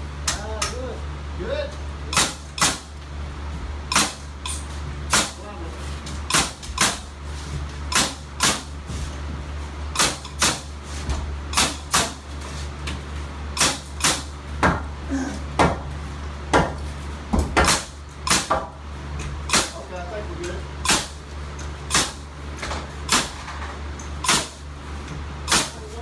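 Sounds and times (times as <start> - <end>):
steady low hum: 0.0 - 26.0
nails hammered into wood: 2.1 - 2.9, 3.9 - 4.2, 6.3 - 7.1, 7.9 - 8.7, 10.0 - 10.7, 11.5 - 12.2, 13.6 - 14.9, 15.6 - 15.9, 16.5 - 18.7, 19.5 - 19.8, 20.8 - 21.2, 21.9 - 22.2, 23.1 - 23.4, 24.2 - 24.6, 25.5 - 25.8.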